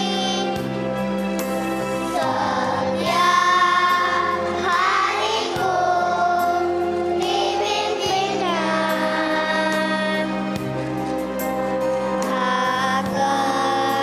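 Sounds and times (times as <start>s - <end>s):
children's choir singing: 0.0s - 0.7s, 2.0s - 10.5s, 12.2s - 14.0s
instrumental backing music: 0.0s - 14.0s.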